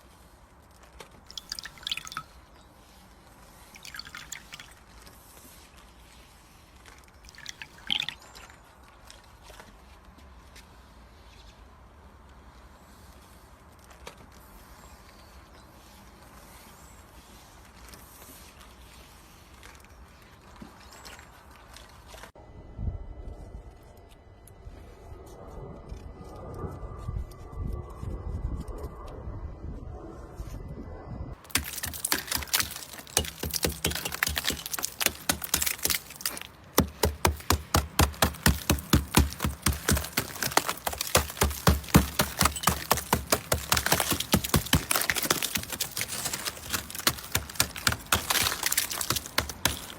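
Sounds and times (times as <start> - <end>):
ice cracking: 1.3 - 2.4, 3.8 - 4.8, 7.3 - 8.2, 31.4 - 49.9
ice crunching: 1.3 - 2.4, 3.7 - 4.9, 7.3 - 8.4, 31.4 - 49.9
sharp knocks: 31.5 - 49.9.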